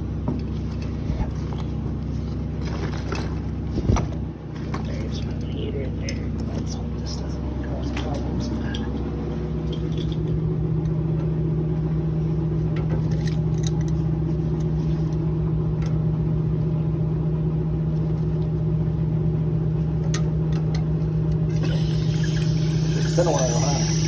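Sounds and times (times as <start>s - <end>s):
electric motor humming: 21.4s - 24.0s.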